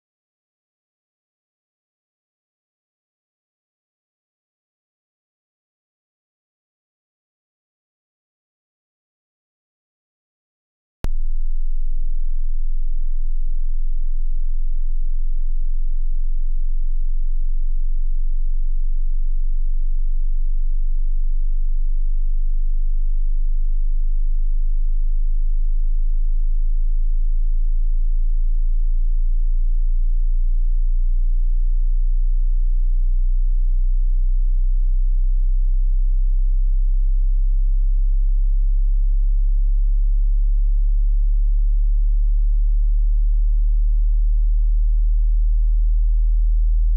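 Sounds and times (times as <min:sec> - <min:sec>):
very low sine test tone: 0:11.0 - 0:46.9.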